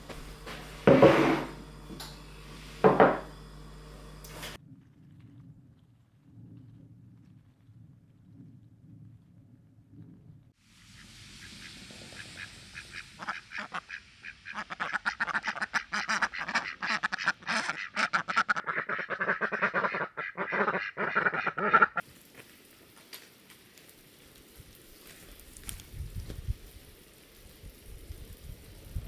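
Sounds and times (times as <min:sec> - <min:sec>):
ducks quacking: 0:11.5 - 0:22.0.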